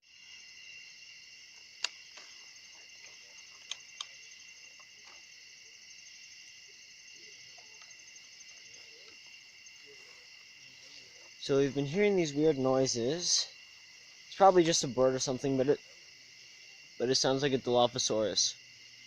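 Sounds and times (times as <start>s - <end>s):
insect chorus trilling: 0.0s - 19.0s
sharp clicks: 1.8s - 2.3s, 3.5s - 4.2s.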